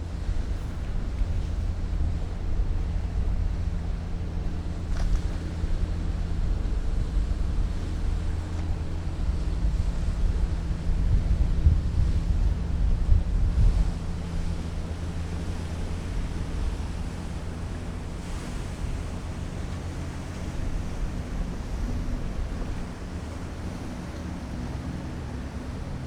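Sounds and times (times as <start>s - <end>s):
wind buffeting microphone: 0.0s - 26.0s
ship engines humming: 12.2s - 26.0s.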